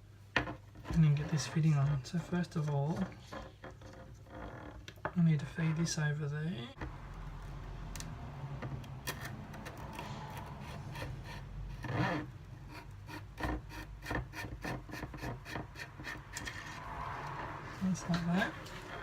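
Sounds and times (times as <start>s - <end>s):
loud scrape: 9.0s - 19.0s
scratchy rubbing of hose: 9.0s - 19.0s.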